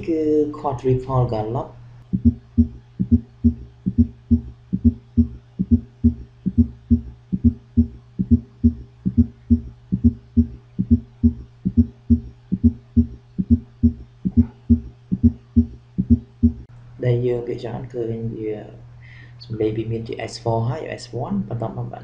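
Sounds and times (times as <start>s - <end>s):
heartbeat low thuds: 2.1s - 16.7s.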